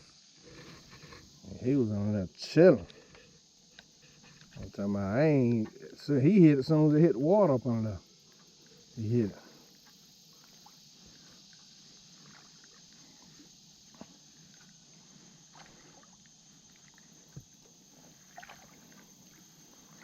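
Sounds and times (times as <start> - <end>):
water sloshing around wading legs: 9.6 - 20.0.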